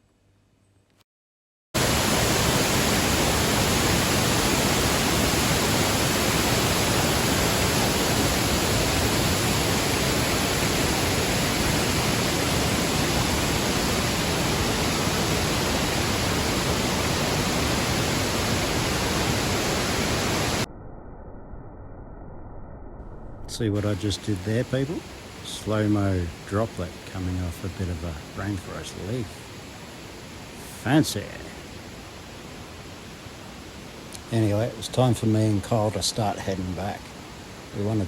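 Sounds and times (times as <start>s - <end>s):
waterfall rushing: 1.8s - 20.7s, 23.6s - 38.0s
quiet hiss: 23.0s - 38.0s.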